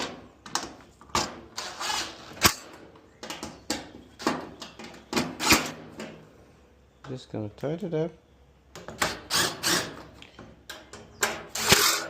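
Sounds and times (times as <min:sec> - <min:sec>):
screws scraping and clicking: 0:10.7 - 0:12.0.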